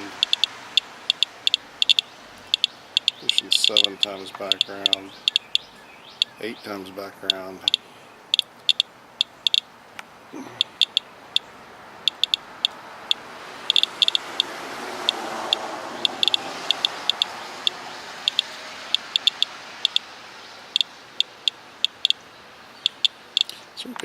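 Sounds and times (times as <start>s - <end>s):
geiger counter clicking: 0.0s - 6.4s, 7.3s - 9.7s, 10.6s - 11.4s, 12.0s - 17.3s, 18.2s - 20.0s, 20.7s - 22.2s, 22.8s - 23.6s.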